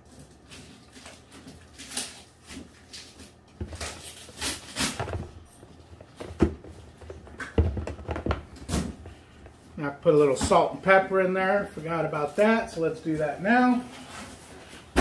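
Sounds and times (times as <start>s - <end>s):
kitchen items clicking and knocking: 3.6s - 9.2s.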